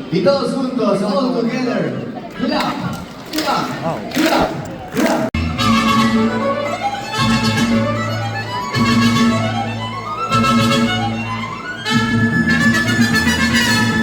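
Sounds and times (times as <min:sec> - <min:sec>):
mariachi band playing: 0:03.3 - 0:14.0.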